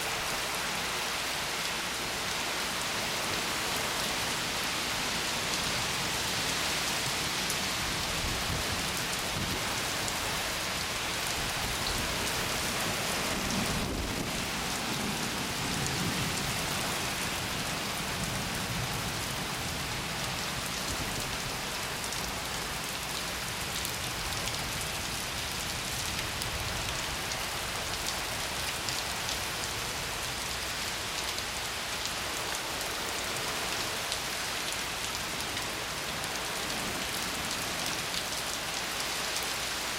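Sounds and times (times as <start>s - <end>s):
steady rain falling: 0.0s - 39.9s
thunder rumbling: 13.2s - 16.4s.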